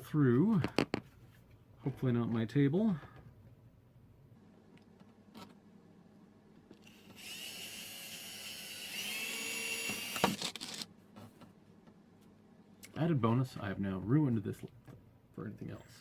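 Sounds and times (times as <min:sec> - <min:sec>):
electric drill whining: 0:06.8 - 0:10.8.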